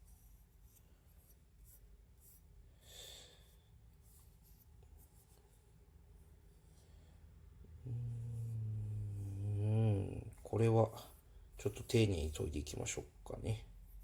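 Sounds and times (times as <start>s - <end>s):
soft rub: 3.9s - 7.0s, 10.2s - 13.0s.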